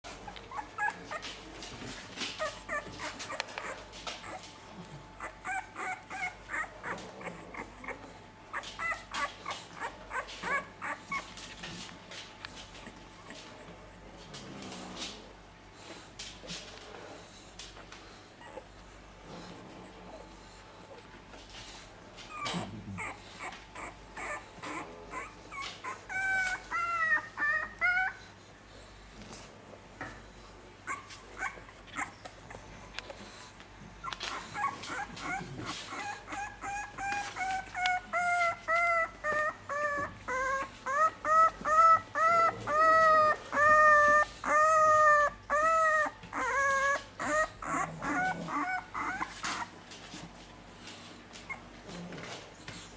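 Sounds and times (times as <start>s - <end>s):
puppies whimpering and yipping: 0.1s - 11.7s, 22.2s - 28.4s, 30.8s - 33.4s, 34.0s - 50.3s, 51.3s - 52.9s.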